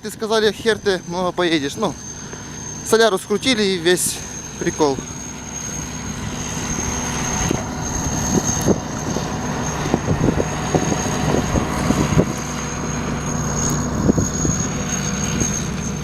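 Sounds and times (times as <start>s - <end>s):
diesel tractor engine running: 0.0s - 16.0s.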